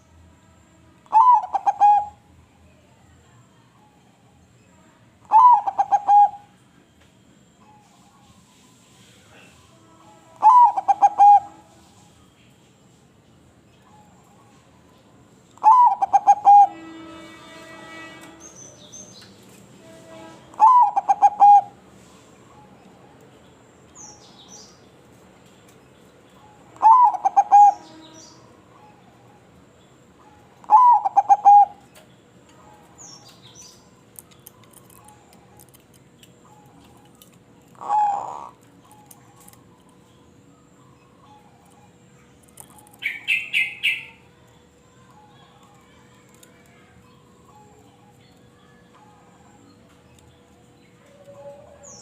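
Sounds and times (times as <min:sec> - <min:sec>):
dove cooing: 0:01.1 - 0:02.2, 0:05.3 - 0:06.5, 0:10.4 - 0:11.6, 0:15.6 - 0:16.8, 0:20.6 - 0:21.8, 0:26.8 - 0:28.0, 0:30.6 - 0:31.8, 0:37.7 - 0:39.6.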